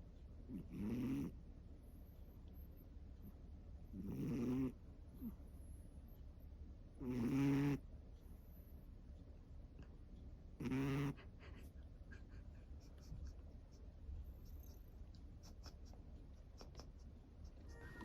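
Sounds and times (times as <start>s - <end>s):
cat snoring: 0.5s - 1.4s, 3.9s - 4.8s, 7.0s - 7.8s, 10.6s - 11.2s.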